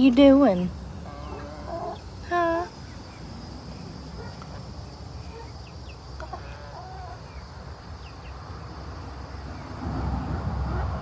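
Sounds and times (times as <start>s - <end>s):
insects buzzing: 0.0s - 11.0s
hens clucking softly: 1.0s - 2.7s, 4.2s - 7.6s.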